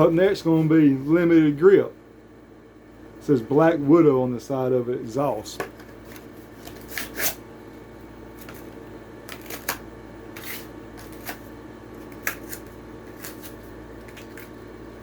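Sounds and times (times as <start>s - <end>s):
steady low hum: 0.0s - 15.0s
packaging being torn open: 6.6s - 7.4s, 9.2s - 9.8s, 12.0s - 14.6s.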